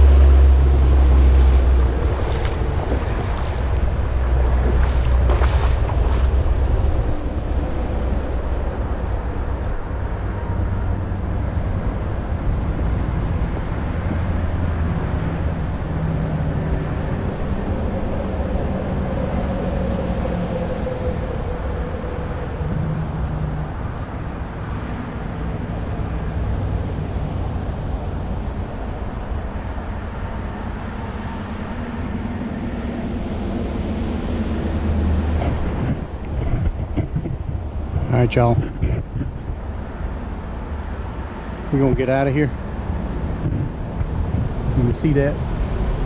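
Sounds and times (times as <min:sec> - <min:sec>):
faint descending whine: 0:00.0 - 0:27.0
passing vehicle rumble: 0:00.0 - 0:46.0.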